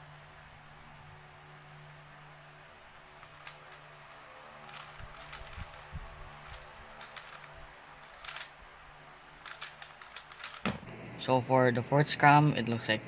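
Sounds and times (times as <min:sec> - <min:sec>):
faint steady hum: 0:00.0 - 0:13.0
puzzle cube clicking: 0:02.8 - 0:10.8.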